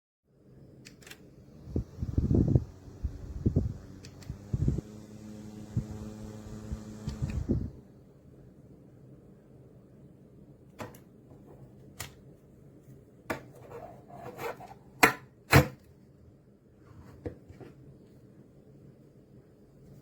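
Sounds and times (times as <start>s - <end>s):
small fan humming: 0.7s - 8.3s
fan handling clicks and knocks: 10.8s - 12.2s.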